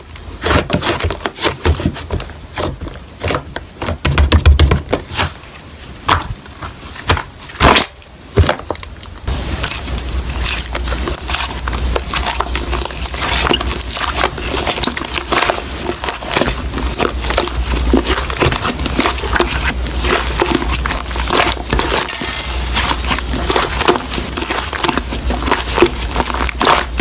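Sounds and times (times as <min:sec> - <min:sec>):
slime crackling and squishing: 0:06.2 - 0:27.0.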